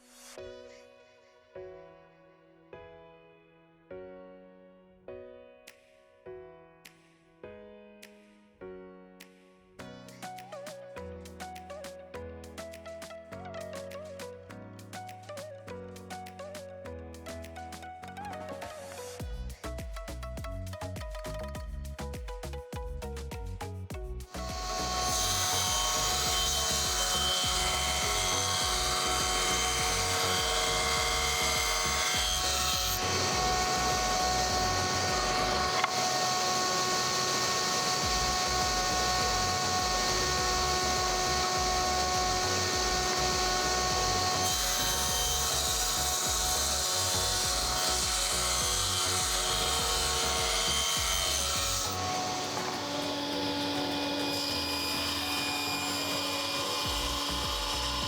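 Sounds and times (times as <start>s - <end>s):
sawing and rubbing wood: 19.0s - 58.0s.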